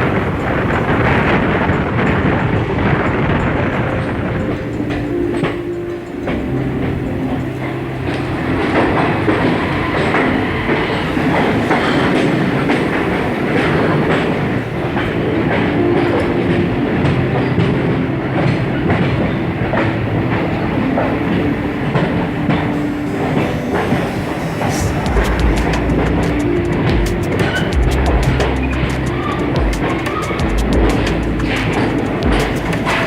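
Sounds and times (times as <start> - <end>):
train rumbling: 0.0 - 33.0
wheels clicking over rail joints: 0.0 - 33.0.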